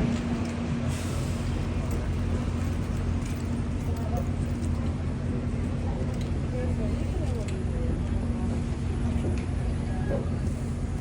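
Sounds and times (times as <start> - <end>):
low traffic rumble: 0.0 - 11.0.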